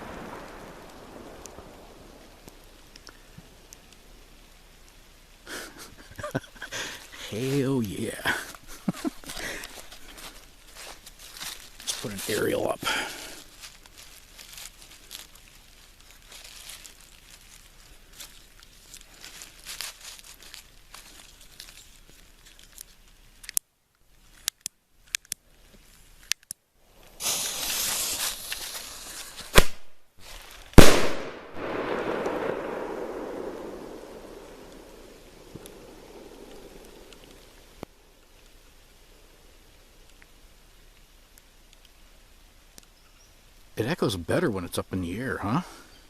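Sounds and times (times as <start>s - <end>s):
faint rustling: 0.0s - 29.6s, 30.2s - 31.0s
sharp clicks: 24.4s - 25.4s, 26.2s - 26.6s
fuse hissing: 27.0s - 29.5s
firework shell bursting: 27.1s - 29.9s, 30.7s - 37.8s.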